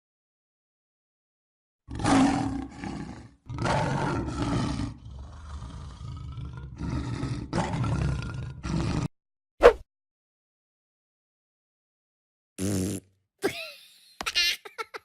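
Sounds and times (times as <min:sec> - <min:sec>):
animal roars: 0:01.9 - 0:09.1.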